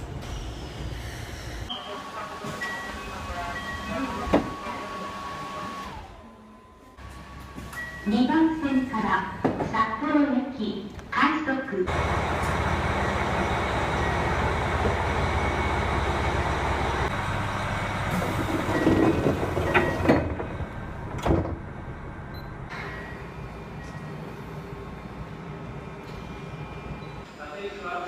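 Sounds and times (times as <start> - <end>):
train doors clunking shut: 18.1 - 21.8.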